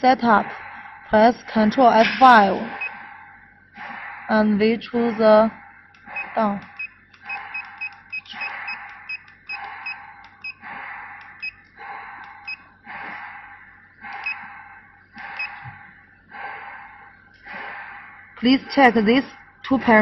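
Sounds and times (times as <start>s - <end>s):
electronic key beeps: 6.2s - 10.6s.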